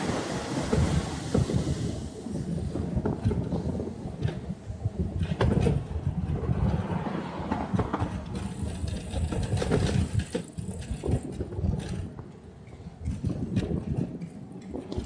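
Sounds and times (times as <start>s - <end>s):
wind buffeting microphone: 0.0s - 15.0s
bicycle clicks and rattles: 3.0s - 4.5s, 5.1s - 15.0s.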